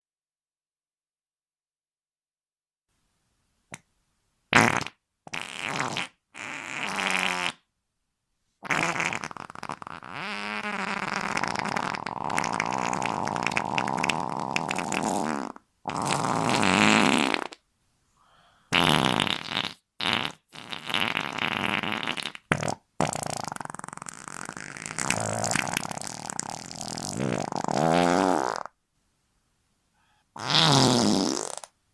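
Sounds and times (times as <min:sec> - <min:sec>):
fart sound effects: 0:04.5 - 0:07.7, 0:08.6 - 0:17.6, 0:18.7 - 0:28.8, 0:30.4 - 0:31.8.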